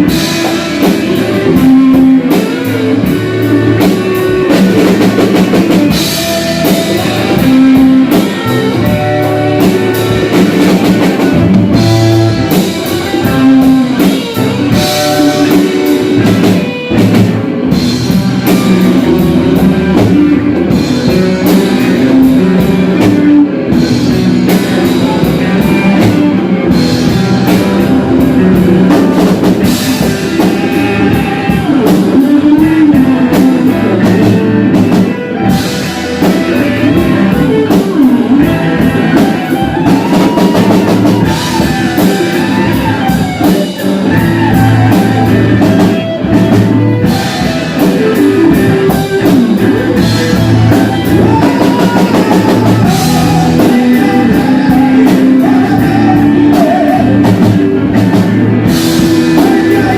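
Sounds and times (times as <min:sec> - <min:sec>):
loud instrumental rock music: 0:00.0 - 0:59.9.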